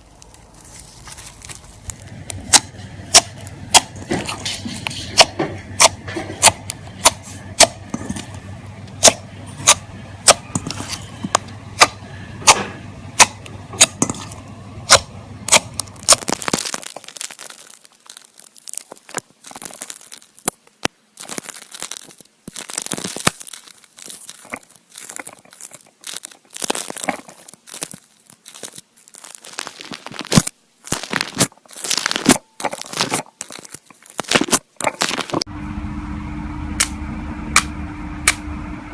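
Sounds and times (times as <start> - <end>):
slime crackling squishes: 0.0 - 35.5
slime popping: 13.2 - 20.6, 21.2 - 35.4.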